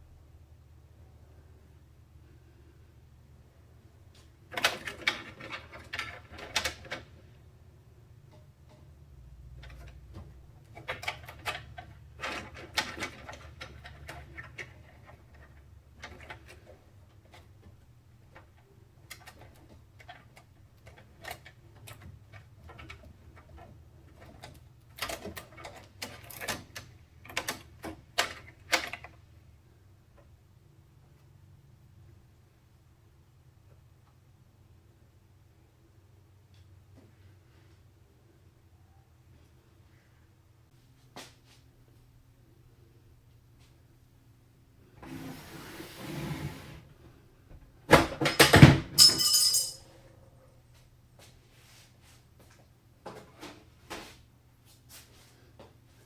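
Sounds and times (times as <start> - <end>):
small hard parts clicking and rattling: 48.2 - 49.8.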